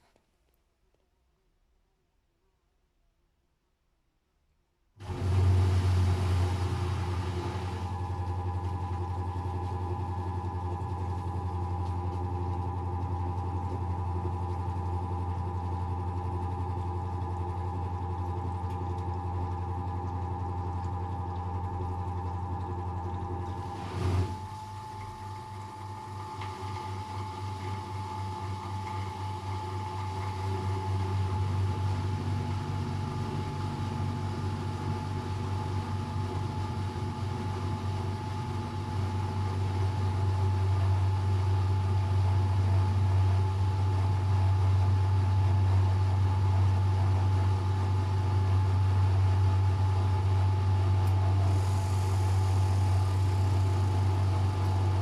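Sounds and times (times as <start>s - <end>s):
washing machine spinning: 5.0s - 55.0s
faint hiss: 51.2s - 54.2s.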